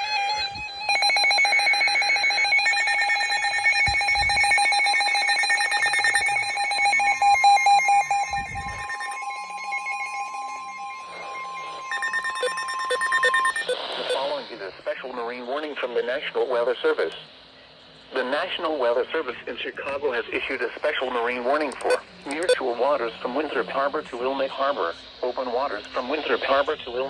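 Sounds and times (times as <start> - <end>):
steady alarm tone: 0.0 - 14.6, 21.8 - 27.0
electronic alarm beeps: 0.3 - 14.5, 21.8 - 22.6.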